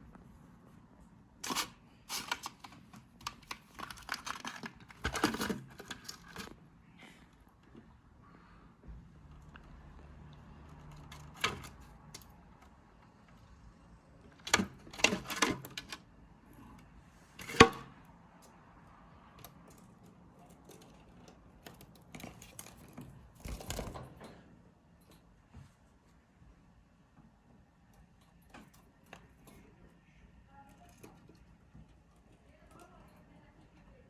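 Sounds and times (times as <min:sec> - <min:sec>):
bird claws tapping and scraping: 0:01.4 - 0:06.6, 0:10.6 - 0:12.8, 0:19.3 - 0:24.3.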